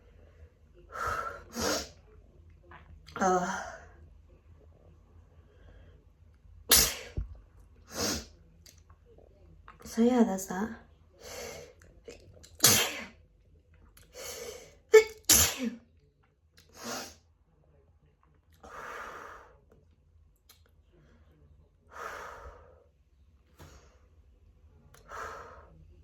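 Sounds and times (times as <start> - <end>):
person sneezing: 6.7 - 7.2, 12.6 - 13.1, 15.0 - 15.8
slow heavy breathing: 18.6 - 19.6, 21.9 - 22.9, 25.0 - 25.8.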